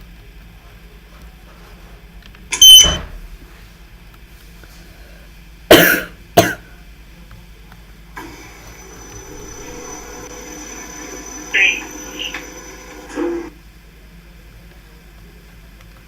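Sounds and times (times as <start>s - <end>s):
person coughing loudly: 5.7s - 6.7s.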